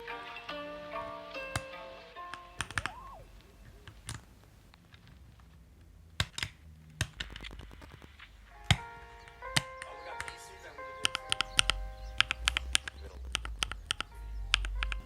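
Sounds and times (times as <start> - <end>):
background music: 0.0 - 3.8, 8.2 - 15.0
mechanical keyboard keystrokes: 2.4 - 3.0, 6.2 - 8.0, 8.6 - 15.0.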